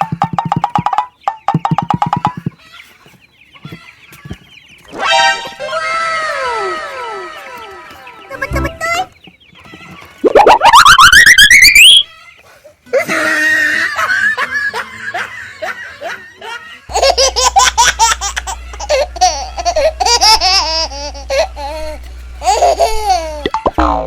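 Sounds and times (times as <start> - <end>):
pulsed laughter: 12.8 - 23.5.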